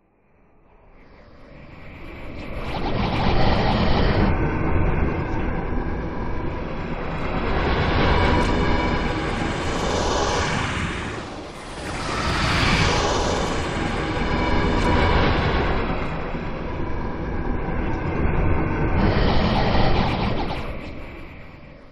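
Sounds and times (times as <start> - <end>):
fluttering sci-fi whoosh: 6.6 - 21.8.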